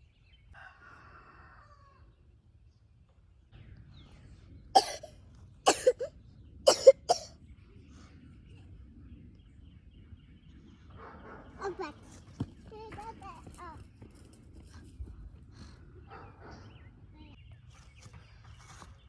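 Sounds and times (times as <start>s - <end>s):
person coughing: 4.8s - 5.1s, 5.7s - 6.1s, 6.7s - 7.3s.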